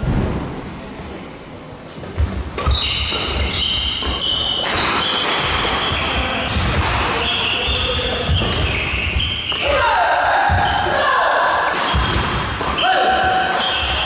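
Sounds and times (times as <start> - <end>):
racket hitting shuttlecock: 2.0 - 11.0, 11.6 - 14.0
shoes squeaking on court floor: 2.1 - 9.8, 12.8 - 14.0.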